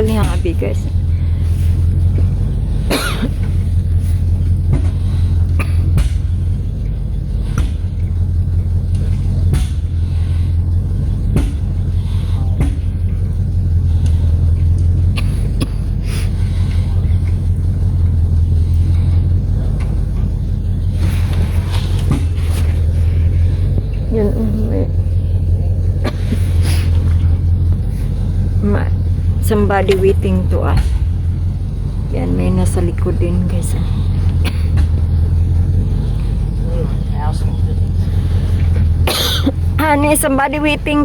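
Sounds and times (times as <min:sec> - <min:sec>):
sharp engine knocks: 0:00.0 - 0:24.1, 0:24.8 - 0:41.0
engine rumbling: 0:00.0 - 0:41.0.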